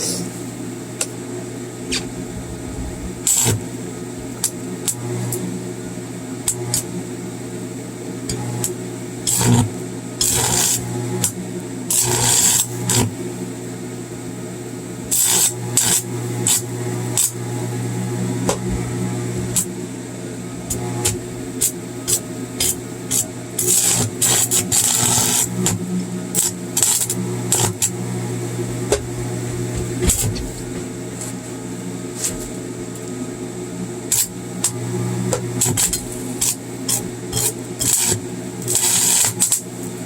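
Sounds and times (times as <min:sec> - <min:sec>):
welding electric hum: 0:00.0 - 0:40.0
welding rod scraping: 0:01.9 - 0:03.6, 0:10.2 - 0:10.8, 0:20.7 - 0:25.8, 0:26.4 - 0:27.9, 0:35.5 - 0:39.6.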